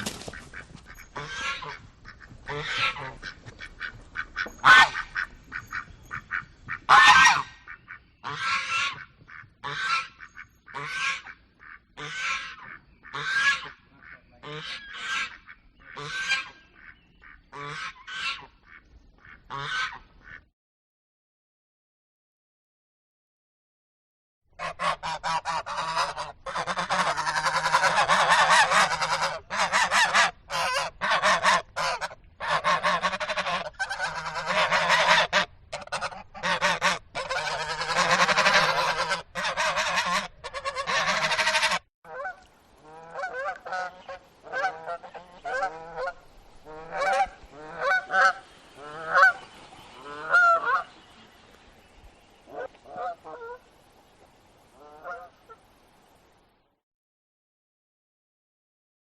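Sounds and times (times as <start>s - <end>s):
flock of geese honking: 0.0s - 20.4s, 24.6s - 53.7s, 54.8s - 55.6s.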